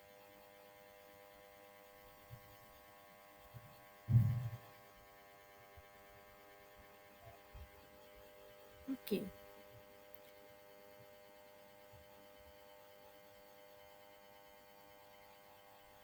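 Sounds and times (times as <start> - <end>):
faint electrical hum: 0.0 - 16.0
brief low sound: 4.1 - 4.6.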